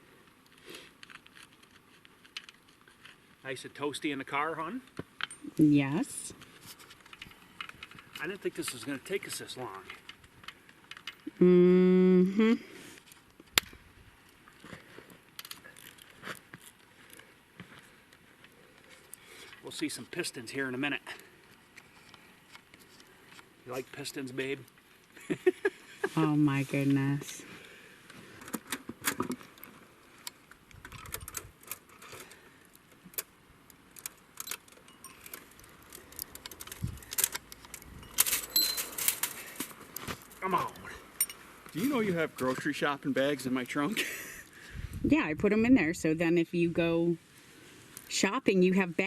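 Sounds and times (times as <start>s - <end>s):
small clicks and crunches: 0.2s - 3.6s, 6.4s - 11.3s, 13.0s - 25.5s, 28.0s - 40.8s
metallic clinks of hand tools: 38.0s - 39.4s.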